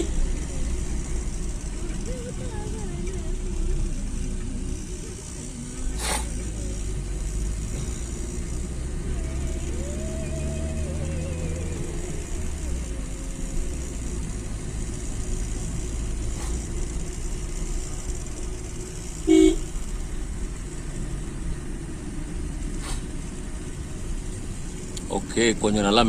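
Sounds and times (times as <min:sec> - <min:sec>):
road and engine rumble: 0:00.0 - 0:26.0
vehicle horn honk: 0:19.2 - 0:19.8.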